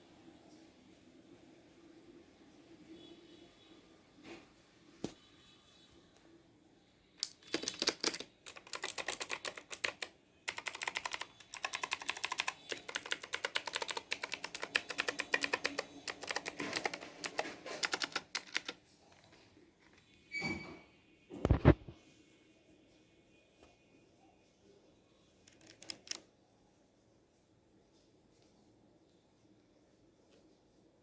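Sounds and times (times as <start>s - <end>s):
clicky mechanical keyboard typing: 7.2s - 18.8s, 25.5s - 26.3s.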